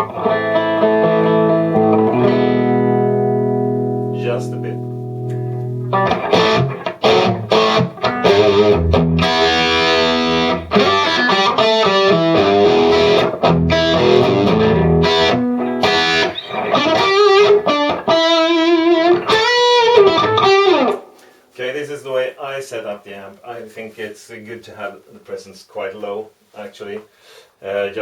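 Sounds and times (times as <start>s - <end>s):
electric guitar with drive: 0.0s - 21.4s.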